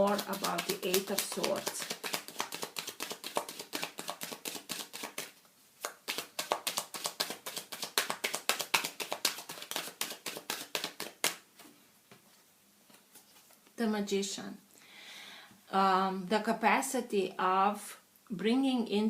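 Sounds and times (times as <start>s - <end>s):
cards being shuffled: 0.0s - 11.8s.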